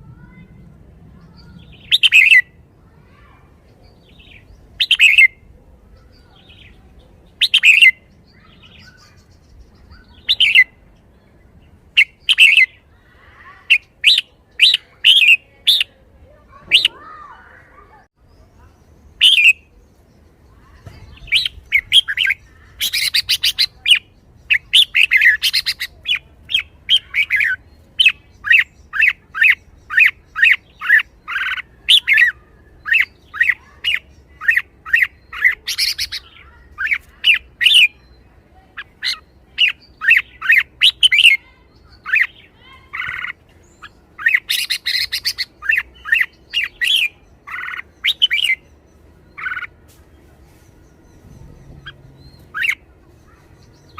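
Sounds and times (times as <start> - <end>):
bird harsh chattering: 1.4 - 3.3, 4.0 - 5.4, 7.3 - 10.8, 12.0 - 17.6, 19.2 - 19.7, 20.6 - 48.6, 49.3 - 49.8, 51.2 - 53.9
bird calling sharp notes: 1.6 - 3.2, 4.2 - 5.4, 16.6 - 17.8, 19.2 - 19.7, 51.2 - 53.9.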